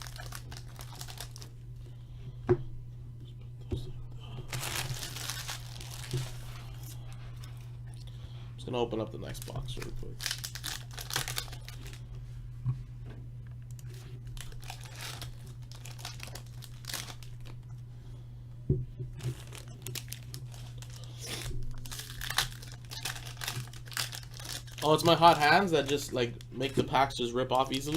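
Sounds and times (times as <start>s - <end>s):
wrapper rustling and tearing: 0.0s - 1.6s, 4.5s - 7.6s, 9.2s - 12.0s, 13.8s - 17.6s, 19.2s - 26.5s, 27.5s - 27.9s
steady low hum: 0.0s - 27.9s.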